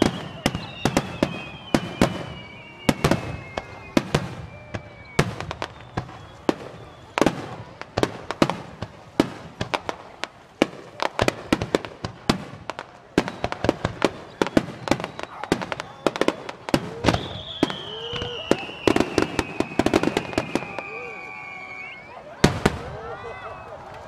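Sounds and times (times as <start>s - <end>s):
high falling whistles: 0.0s - 7.3s, 14.2s - 22.4s
fireworks bursting: 0.0s - 24.0s.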